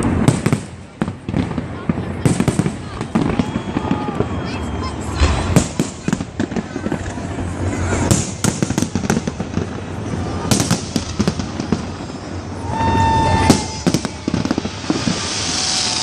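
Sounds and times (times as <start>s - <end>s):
fireworks bangs and crackles: 0.0s - 16.0s
rising hiss: 11.7s - 16.0s.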